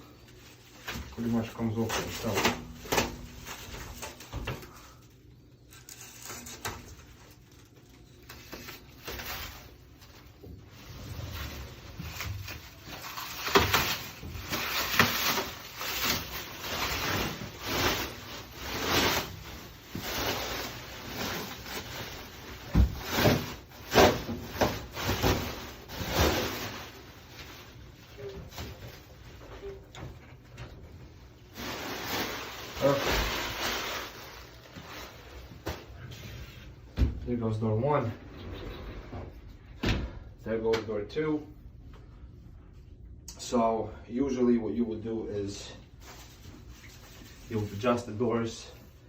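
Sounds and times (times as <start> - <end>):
plastic wrap crinkling: 0.0 - 29.8, 31.3 - 35.7, 46.0 - 48.5.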